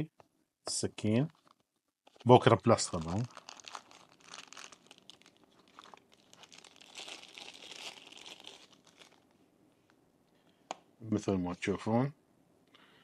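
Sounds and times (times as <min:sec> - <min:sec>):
packaging crinkling: 0:01.3 - 0:09.4.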